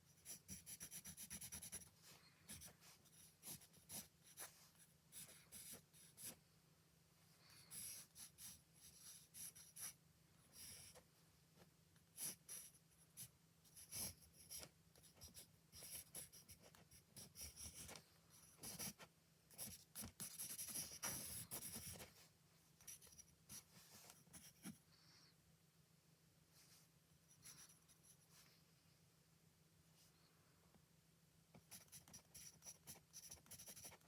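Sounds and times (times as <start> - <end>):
drawing tool scratching on paper: 0.1 - 6.4, 7.5 - 11.0, 12.2 - 22.1, 31.6 - 34.0.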